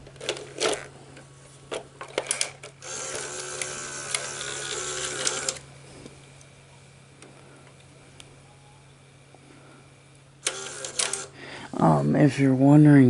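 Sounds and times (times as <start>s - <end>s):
tape mechanism whirring: 1.7s - 5.7s, 10.4s - 11.4s.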